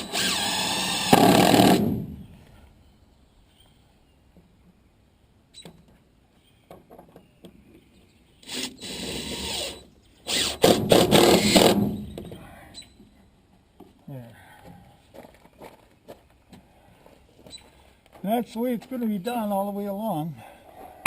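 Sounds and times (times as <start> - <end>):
power drill running: 0.0 - 2.0, 8.4 - 12.0.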